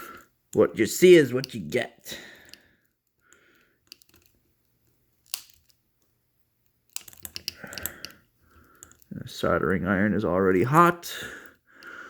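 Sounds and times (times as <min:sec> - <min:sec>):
small parts clicking: 0:01.3 - 0:09.2.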